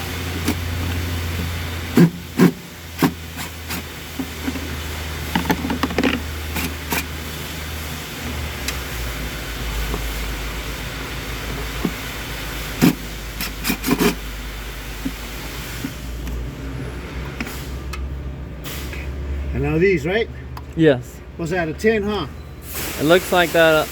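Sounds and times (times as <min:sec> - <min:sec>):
low engine drone: 0:00.0 - 0:22.8
hand tools clicking and knocking: 0:00.3 - 0:07.1.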